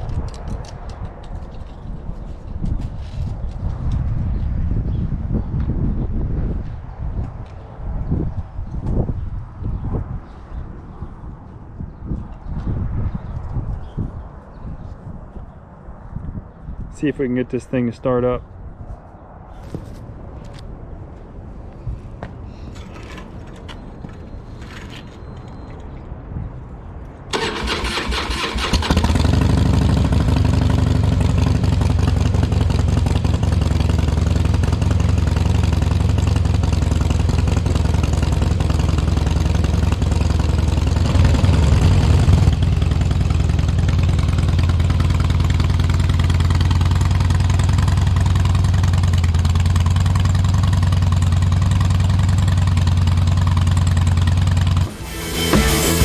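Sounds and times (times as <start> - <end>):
electric starter cranking: 27.3 - 29.1
motorcycle engine idling and revving: 27.3 - 56.0.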